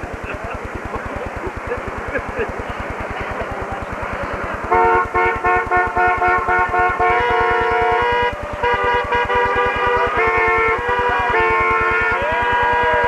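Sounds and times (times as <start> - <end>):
car horns honking: 4.5 - 13.0.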